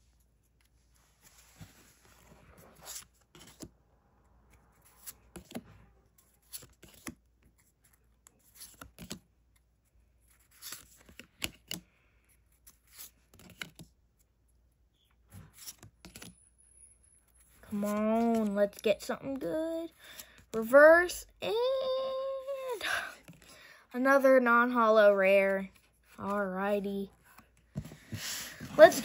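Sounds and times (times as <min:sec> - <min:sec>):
cards rustling: 0:00.4 - 0:03.7, 0:04.4 - 0:14.3, 0:15.2 - 0:16.4, 0:17.3 - 0:20.8, 0:22.4 - 0:23.6, 0:27.1 - 0:29.0.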